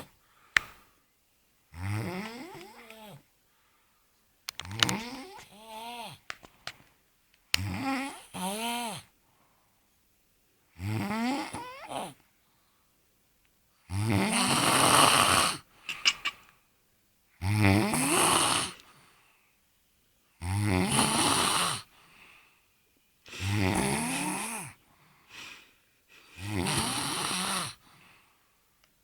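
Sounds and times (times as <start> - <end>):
man snoring loudly: 1.8 - 3.2, 7.6 - 9.1, 10.8 - 12.1, 13.9 - 15.7, 17.4 - 18.8, 20.4 - 21.9, 23.4 - 24.8, 26.4 - 27.8.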